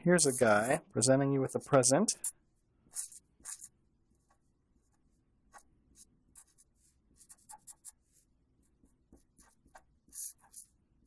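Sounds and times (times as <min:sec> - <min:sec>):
pen scratching on paper: 0:02.9 - 0:10.8.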